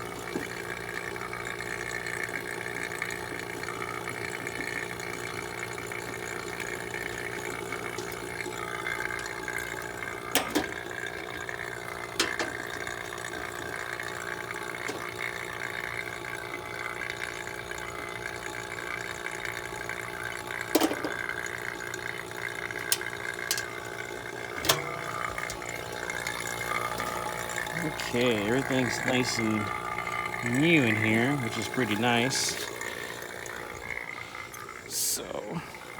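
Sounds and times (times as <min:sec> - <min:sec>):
vacuum pump running: 0:00.0 - 0:35.9
sharp clicks and knocks: 0:10.3 - 0:10.8.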